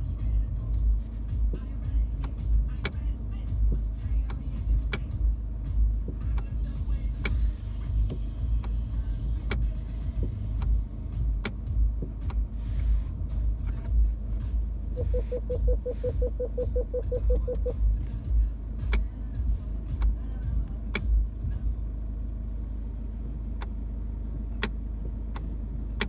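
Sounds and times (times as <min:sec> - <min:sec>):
car engine rumbling: 0:00.0 - 0:26.0
car gear selector clicking: 0:02.1 - 0:05.3, 0:06.0 - 0:08.8, 0:09.4 - 0:13.0, 0:14.9 - 0:18.2, 0:18.8 - 0:19.1, 0:19.9 - 0:21.2, 0:23.5 - 0:23.8, 0:24.6 - 0:26.0.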